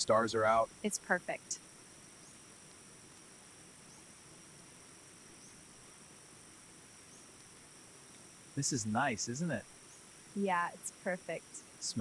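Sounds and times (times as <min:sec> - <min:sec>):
crickets chirring: 0:00.0 - 0:12.0
low ambient hiss: 0:00.0 - 0:12.0.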